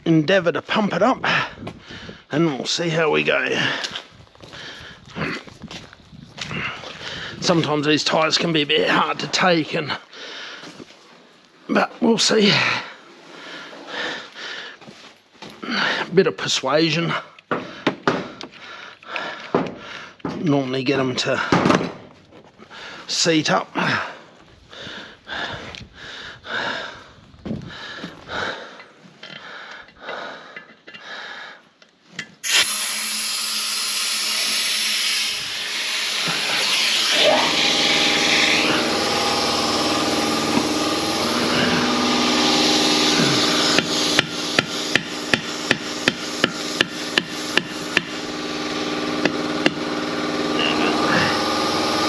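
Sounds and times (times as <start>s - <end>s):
motor hum: 32.4s - 52.0s
compressed air rushing: 34.3s - 52.0s.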